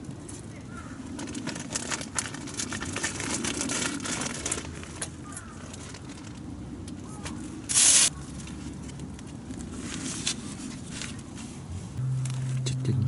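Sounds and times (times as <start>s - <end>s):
steady low rumble: 5.6s - 13.0s
loud hissing scrape: 7.7s - 8.1s.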